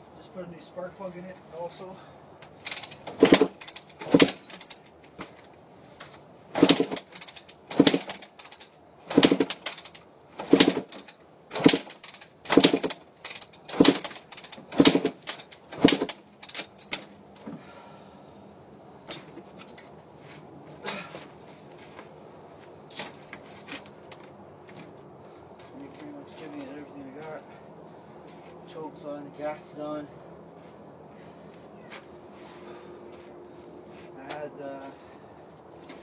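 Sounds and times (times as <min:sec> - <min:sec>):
dirt bike kick-start turning over: 0:02.6 - 0:05.4, 0:06.5 - 0:17.1.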